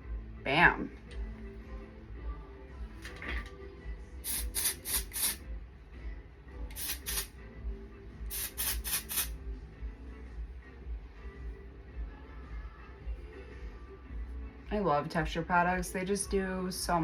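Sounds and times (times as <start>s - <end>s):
aerosol spray hissing bursts: 4.2s - 5.4s, 6.7s - 7.3s, 8.3s - 9.4s.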